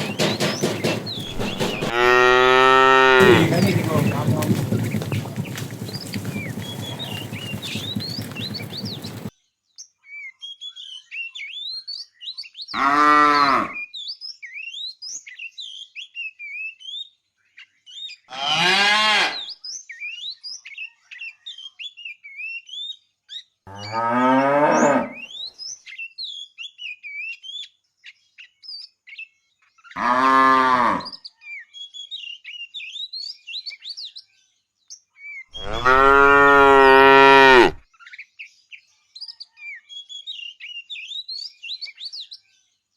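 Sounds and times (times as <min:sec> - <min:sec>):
small birds chirping: 0:00.0 - 0:02.2, 0:03.0 - 0:09.3, 0:35.0 - 0:39.6
cow mooing: 0:00.0 - 0:09.3, 0:12.8 - 0:13.8, 0:18.3 - 0:19.4, 0:23.7 - 0:25.2, 0:30.0 - 0:31.1, 0:35.6 - 0:37.8.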